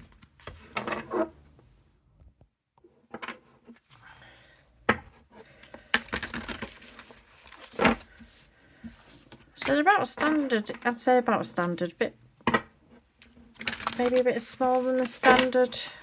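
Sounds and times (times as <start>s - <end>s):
cards tapping and rubbing: 5.6s - 10.4s.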